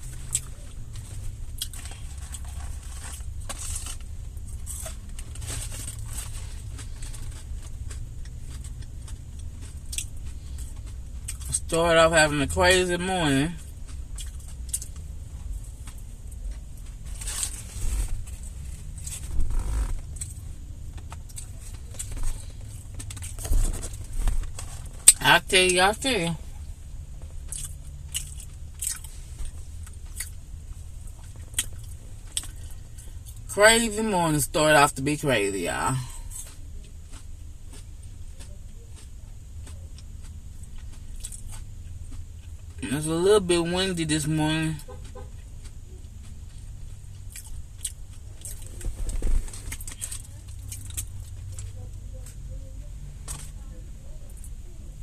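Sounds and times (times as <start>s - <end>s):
chewing noises: 0.0s - 11.8s, 12.4s - 25.2s, 26.6s - 33.4s, 36.0s - 42.8s, 44.8s - 54.6s
low steady hum: 0.0s - 55.0s
low rumble: 13.5s - 25.2s.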